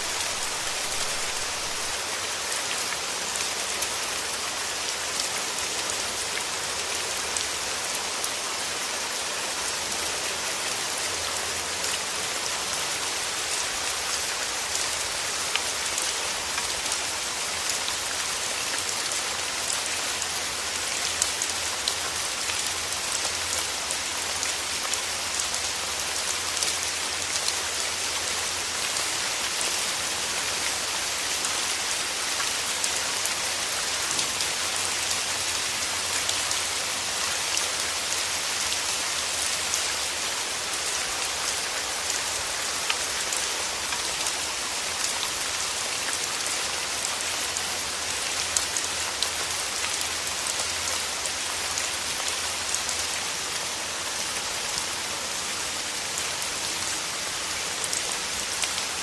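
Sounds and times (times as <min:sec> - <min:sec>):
rain falling: 0:00.0 - 0:59.0.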